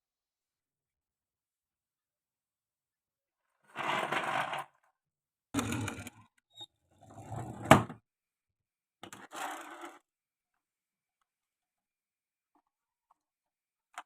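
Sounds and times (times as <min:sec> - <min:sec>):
marbles rolling on wooden track: 0:03.8 - 0:04.7, 0:05.6 - 0:06.2.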